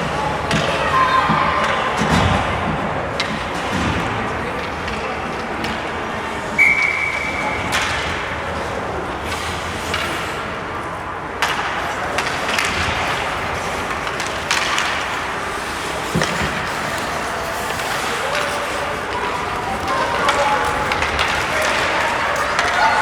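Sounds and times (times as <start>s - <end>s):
skates and sticks on ice: 0.0s - 23.0s
referee's whistle: 6.6s - 7.4s
rink noise: 11.4s - 23.0s.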